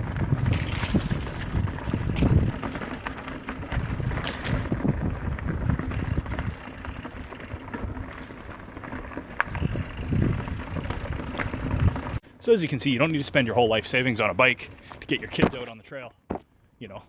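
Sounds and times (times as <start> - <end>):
wind gusting on microphone: 0.0 - 7.0, 9.5 - 12.2
bike rattling and clicking: 0.0 - 12.2, 13.8 - 15.7
bike tyres on dirt: 0.0 - 16.5.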